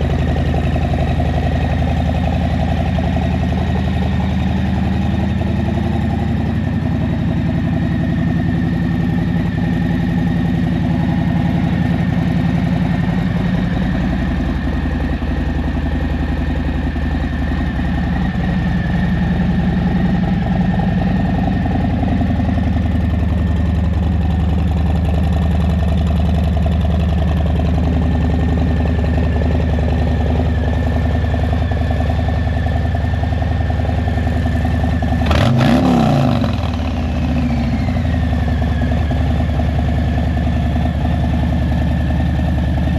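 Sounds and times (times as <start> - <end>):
motorcycle engine running: 0.0 - 42.9.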